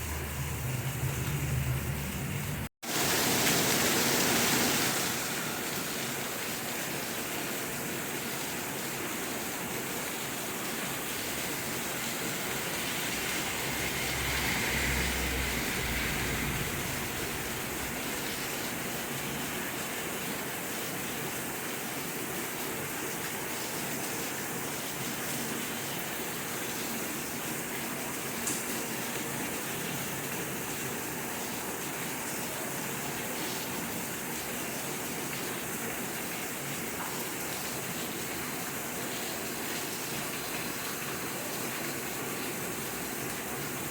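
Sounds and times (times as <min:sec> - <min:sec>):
low rumble: 0:00.0 - 0:02.7, 0:12.5 - 0:18.8
steady rain falling: 0:00.0 - 0:43.9.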